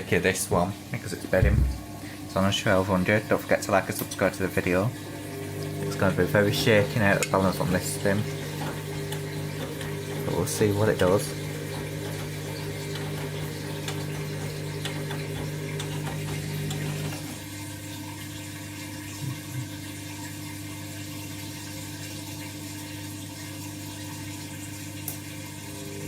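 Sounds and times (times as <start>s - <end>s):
washing machine drain pump hum: 0.0s - 26.0s
water draining: 1.3s - 20.1s.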